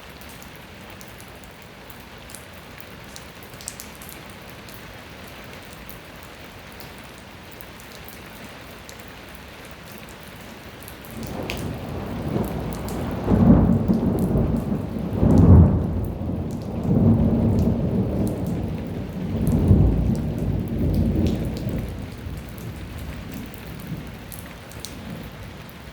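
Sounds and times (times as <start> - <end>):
light rain falling: 0.0 - 25.9
thunder rumbling: 11.2 - 25.6.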